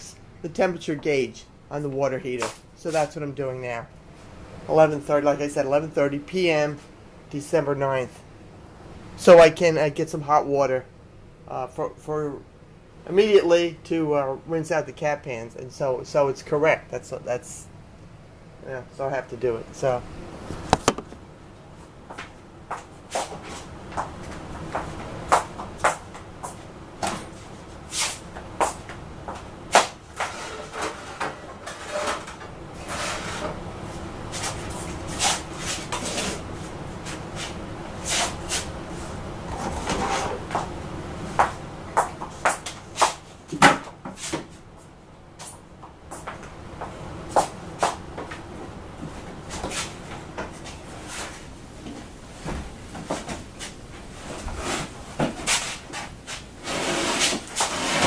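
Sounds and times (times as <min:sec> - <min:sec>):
cupboard doors opening and closing: 0:20.6 - 0:21.2.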